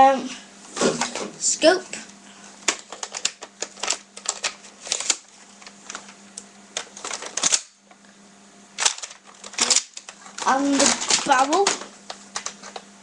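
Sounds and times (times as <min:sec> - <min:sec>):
faint steady hum: 0:00.0 - 0:13.0
plastic toy parts clicking: 0:08.8 - 0:10.1.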